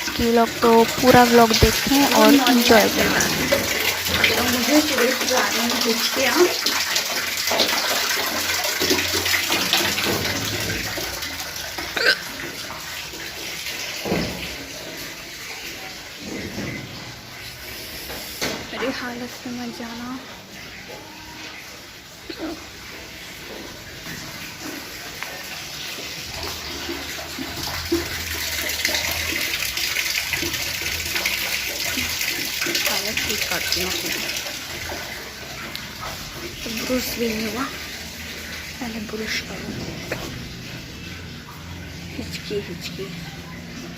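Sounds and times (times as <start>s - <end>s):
water running: 0.0s - 43.9s.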